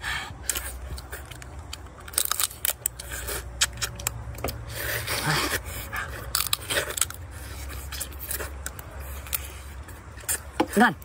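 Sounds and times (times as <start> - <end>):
shrimp shell cracking and peeling: 0.4 - 4.6, 6.2 - 7.2.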